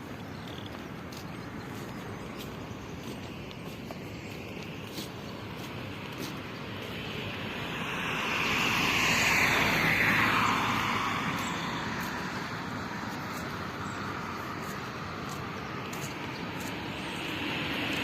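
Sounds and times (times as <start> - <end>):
vehicle passing by: 4.9 - 18.0.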